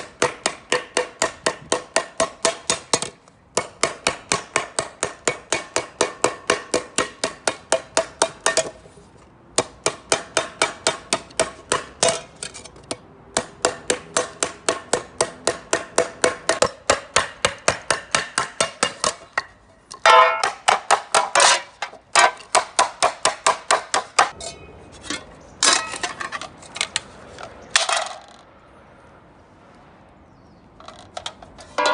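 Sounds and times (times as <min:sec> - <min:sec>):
hammer striking metal: 0:13.4 - 0:24.7.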